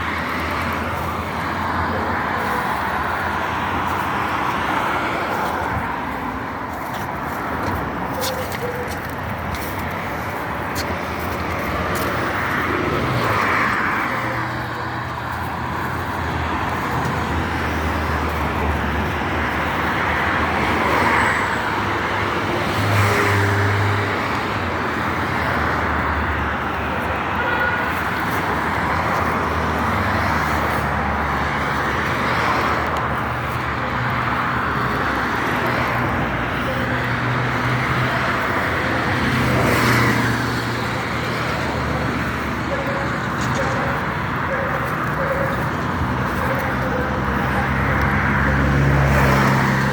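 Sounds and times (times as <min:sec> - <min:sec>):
passing car engines: 0:00.0 - 0:49.9
road traffic noise: 0:00.0 - 0:49.9.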